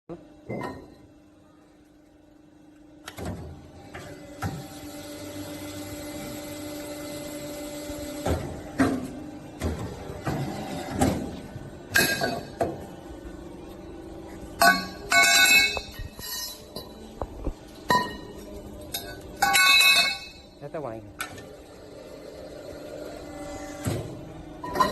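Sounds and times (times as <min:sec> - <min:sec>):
pipe bending machine humming: 0:00.2 - 0:24.9
machine clunks and knocks: 0:08.2 - 0:12.9.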